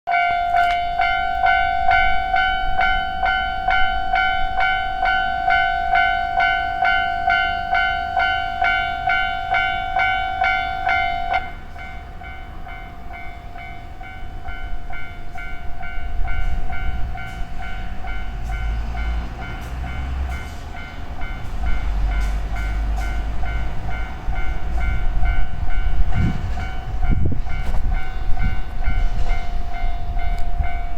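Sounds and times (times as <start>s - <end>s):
train rumbling past: 0.1s - 30.9s
train wheel clicks: 16.2s - 30.6s.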